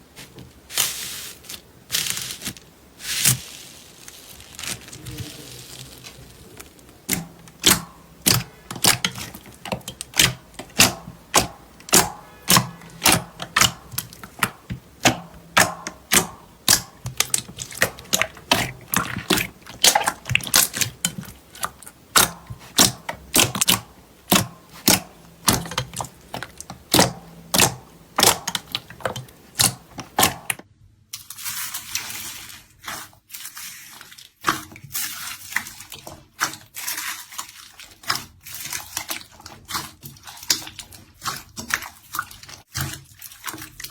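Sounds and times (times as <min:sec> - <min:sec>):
slime hissing crackle: 0:00.7 - 0:07.2.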